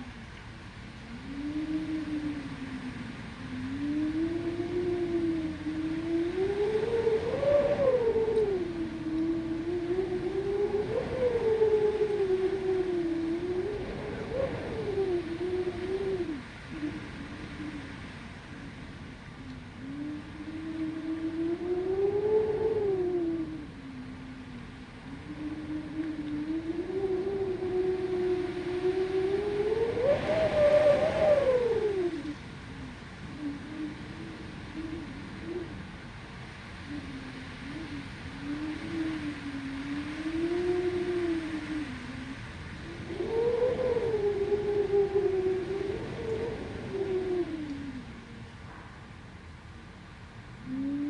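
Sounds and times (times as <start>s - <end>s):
rush of wind: 0.0s - 51.0s
wind moaning: 0.0s - 51.0s.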